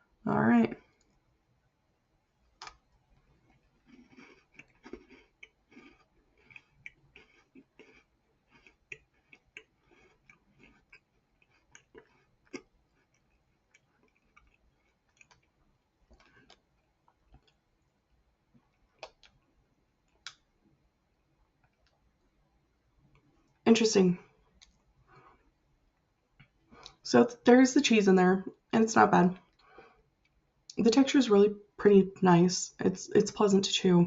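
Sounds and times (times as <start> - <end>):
person chewing crunchy cookie: 2.4 - 22.1.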